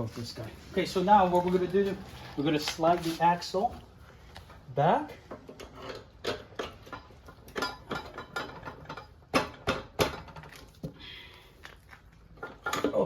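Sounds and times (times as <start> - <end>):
metal clicks scrapes and knocks: 5.3 - 10.6.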